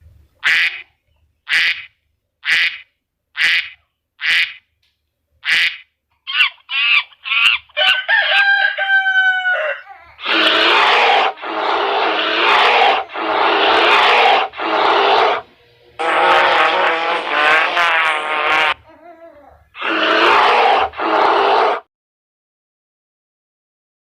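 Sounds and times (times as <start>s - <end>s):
rooster crowing: 7.7s - 10.2s
harsh animal calls: 9.4s - 19.1s, 19.8s - 21.9s.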